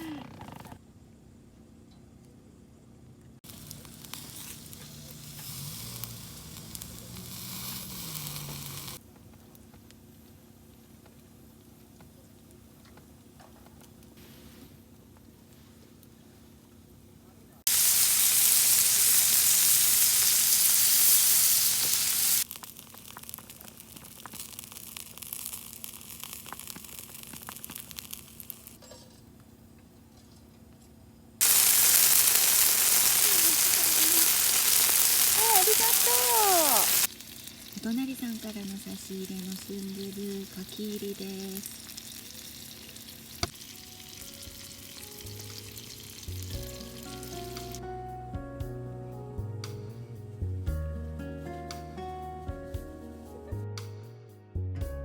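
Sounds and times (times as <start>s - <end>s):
meat sizzling on a grill: 3.4s - 9.0s, 17.7s - 28.8s, 31.4s - 47.8s
pops and crackles: 3.4s - 10.0s, 21.1s - 28.8s, 31.4s - 43.8s
background music with held notes: 43.7s - 55.0s.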